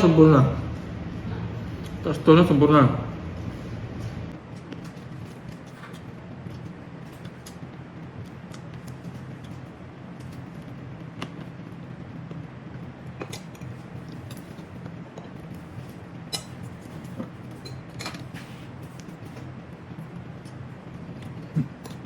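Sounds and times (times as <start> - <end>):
steady low hum: 0.0 - 22.0
cutlery clinking on plates: 16.3 - 16.6.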